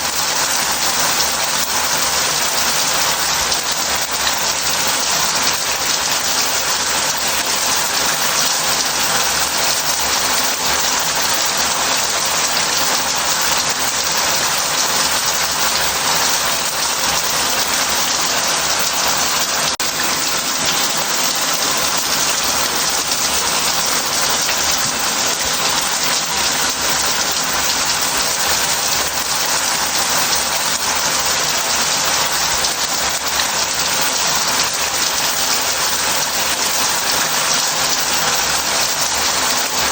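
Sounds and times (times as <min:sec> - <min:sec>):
shower spraying into a bath: 0:00.0 - 0:39.9.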